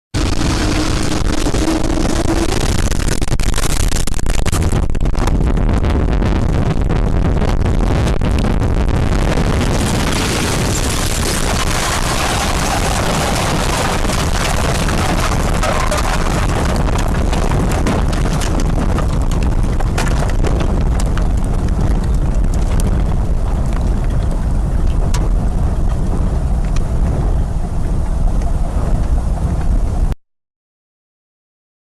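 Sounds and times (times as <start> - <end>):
wind buffeting microphone: 0.2 - 30.2
sharp ticks and knocks: 16.2 - 29.7.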